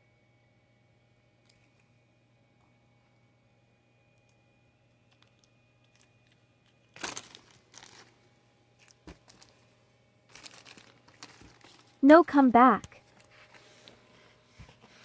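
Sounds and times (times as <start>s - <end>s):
plastic packaging crinkling: 5.1s - 8.2s, 8.8s - 9.7s, 10.3s - 12.1s.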